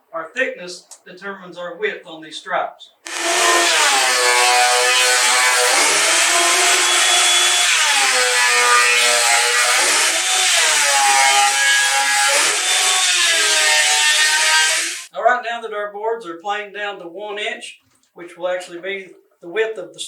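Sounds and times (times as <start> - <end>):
thickness planer planing boards: 3.1 - 15.1.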